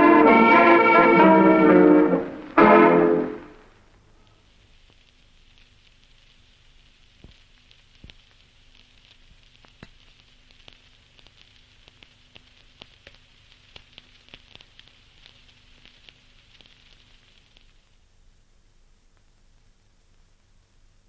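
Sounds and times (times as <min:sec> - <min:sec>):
faint steady hiss: 0:00.0 - 0:21.0
sharp clicks and crackles: 0:07.2 - 0:17.7.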